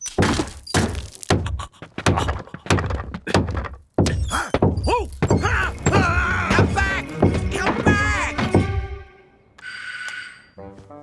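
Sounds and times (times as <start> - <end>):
cartoon slapstick thuds: 0.0 - 8.8.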